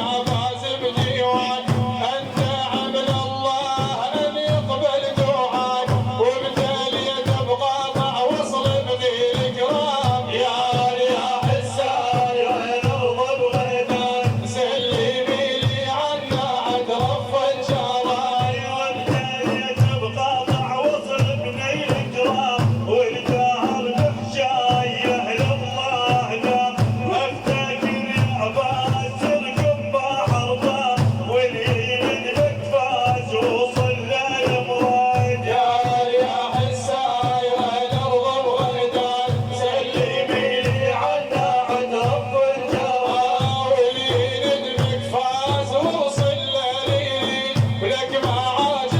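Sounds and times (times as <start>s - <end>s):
steady drum pulse: 0.0s - 48.9s
voices chanting a melody: 34.5s - 43.5s.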